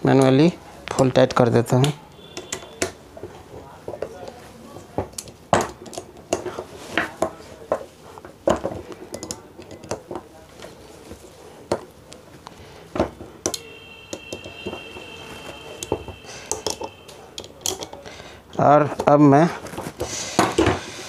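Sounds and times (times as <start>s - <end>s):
faint high whine: 13.6s - 17.3s.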